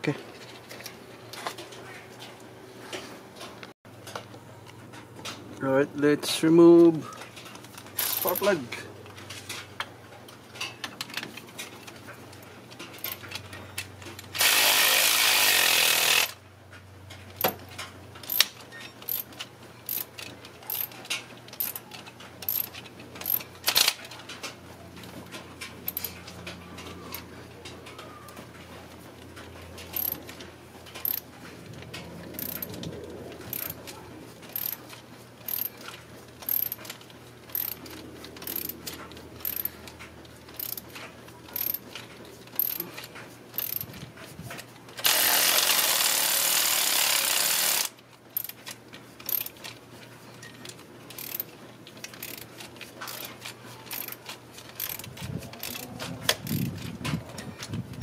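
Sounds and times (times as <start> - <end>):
ratchet wrench clicking: 8.0 - 8.6, 13.0 - 13.4, 14.2 - 16.4, 18.2 - 21.8, 22.4 - 24.0, 25.9 - 26.2, 29.9 - 30.2, 31.0 - 31.3, 32.4 - 32.7, 33.5 - 33.8, 34.5 - 39.8, 40.5 - 41.9, 42.6 - 42.8, 43.6 - 43.9, 45.0 - 48.6, 49.2 - 49.6, 51.1 - 52.5, 53.1 - 56.9.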